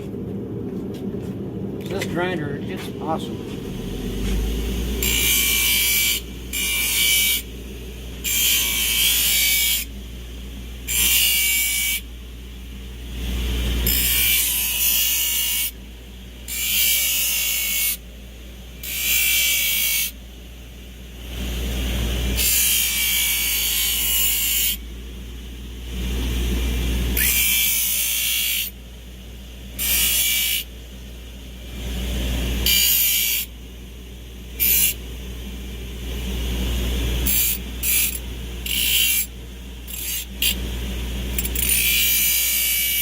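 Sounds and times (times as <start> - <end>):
electric grinder running: 3.6 - 7.5, 8.2 - 9.9, 10.8 - 12.1, 13.4 - 15.8, 21.4 - 24.8, 27.0 - 28.8, 29.8 - 30.7, 34.6 - 35.0, 37.0 - 39.3, 39.9 - 40.7, 41.3 - 43.0
blade grinding on grinder: 4.2 - 7.5, 8.2 - 9.9, 10.8 - 12.0, 13.6 - 15.8, 16.4 - 18.0, 18.8 - 20.2, 21.9 - 24.8, 27.1 - 28.8, 29.7 - 30.7, 32.6 - 33.5, 34.6 - 35.0, 37.2 - 40.7, 41.3 - 43.0.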